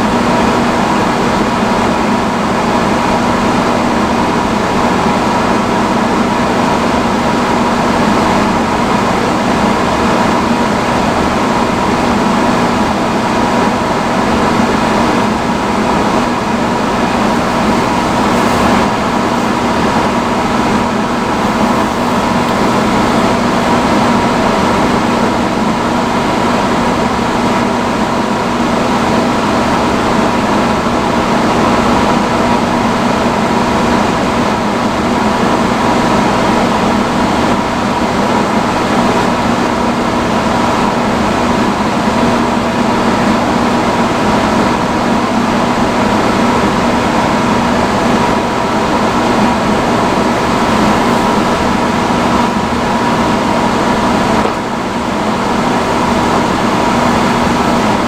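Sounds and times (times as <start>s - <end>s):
hood hair dryer running: 15.6s - 26.0s, 48.8s - 58.0s.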